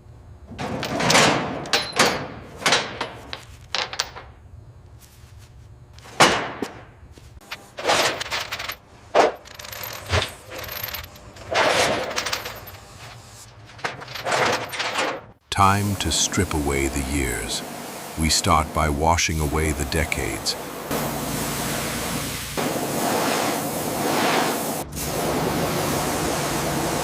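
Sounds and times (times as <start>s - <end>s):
sharp knocks and clanks: 0.5s - 4.3s.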